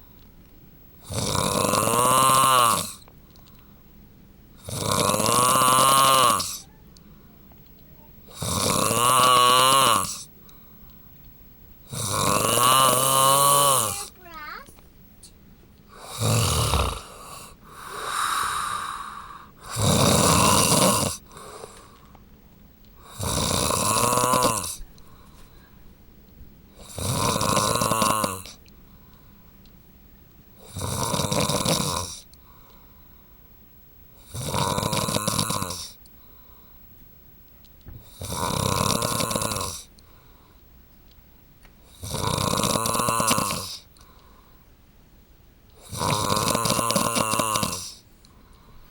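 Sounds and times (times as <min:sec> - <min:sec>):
man snoring loudly: 0:01.0 - 0:03.0, 0:04.6 - 0:06.7, 0:08.3 - 0:10.3, 0:11.9 - 0:14.2, 0:15.9 - 0:21.5, 0:23.0 - 0:24.8, 0:26.8 - 0:28.6, 0:30.6 - 0:32.3, 0:34.2 - 0:36.0, 0:38.1 - 0:39.9, 0:41.9 - 0:43.9, 0:45.8 - 0:48.0.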